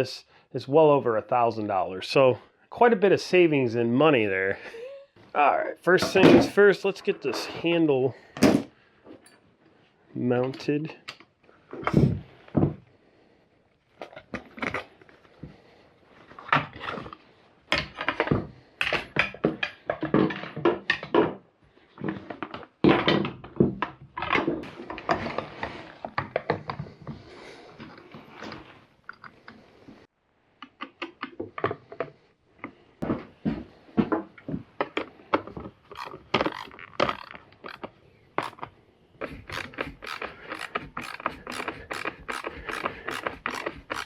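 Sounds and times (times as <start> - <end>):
hand tools clicking and clanking: 36.0 - 44.0.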